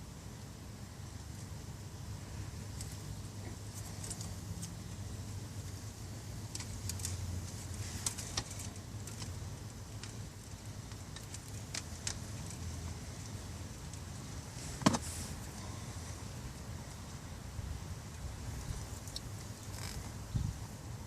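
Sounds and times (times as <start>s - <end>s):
steady low hum: 0.0s - 21.0s
small clicks and rattles of wiring: 6.4s - 14.0s.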